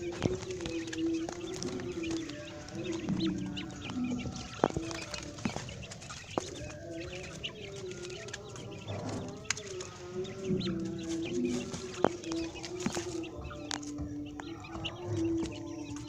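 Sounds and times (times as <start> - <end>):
quail chirping and clucking: 0.0 - 16.0.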